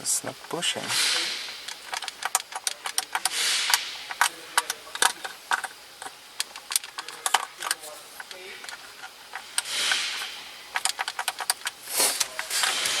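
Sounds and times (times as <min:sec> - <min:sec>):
plastic parts clicking and rattling: 0:01.6 - 0:13.0
hissing rustle: 0:07.2 - 0:13.0.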